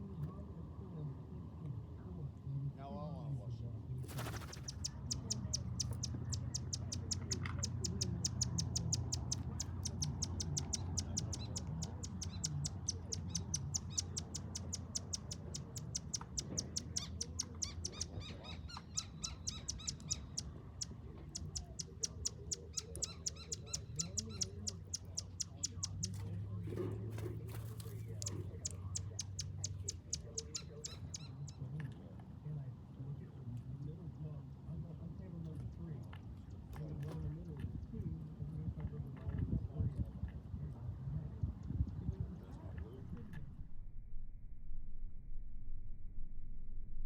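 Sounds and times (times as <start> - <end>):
bird calling high chips: 4.1 - 26.2
low steady hum: 40.6 - 47.0.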